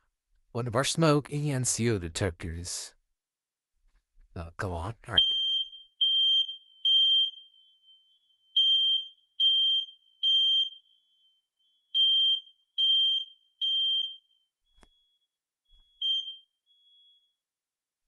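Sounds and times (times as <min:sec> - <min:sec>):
smoke alarm beeping: 0:05.2 - 0:17.4.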